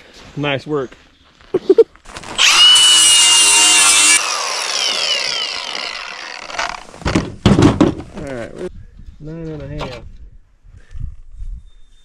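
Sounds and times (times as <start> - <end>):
disc power tool whining: 2.4 - 6.9.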